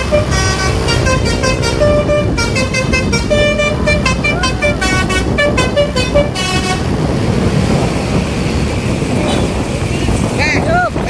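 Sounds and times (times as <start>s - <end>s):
bus horn playing a tune: 0.0s - 7.2s
road and wind rumble: 0.0s - 11.0s.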